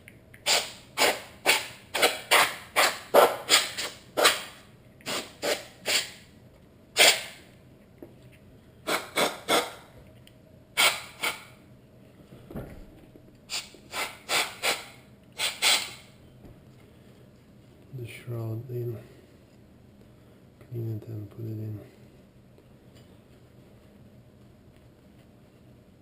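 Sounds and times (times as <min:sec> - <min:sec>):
short noisy cleaning bursts: 0:00.4 - 0:06.2, 0:07.0 - 0:07.4, 0:08.9 - 0:09.8, 0:10.8 - 0:11.5, 0:13.5 - 0:16.1.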